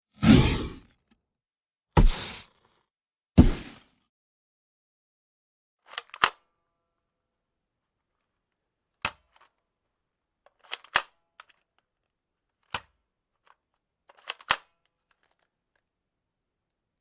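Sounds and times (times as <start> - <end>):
sharp gunshot cracks: 3.4 - 3.8.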